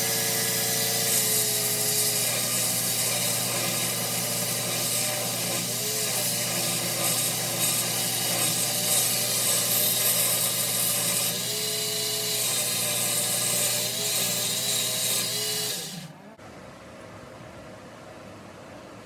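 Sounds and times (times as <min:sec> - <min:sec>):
power tool humming and whining: 0:00.0 - 0:16.2.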